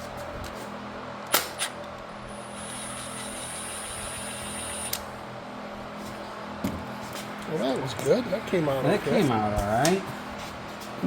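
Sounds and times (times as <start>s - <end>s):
impact driver whine: 1.3s - 5.1s.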